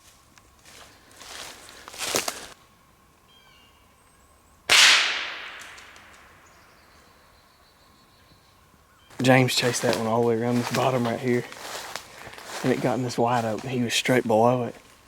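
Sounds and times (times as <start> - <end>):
rustle: 0.0 - 13.6
rifle shot echoing: 4.7 - 6.3.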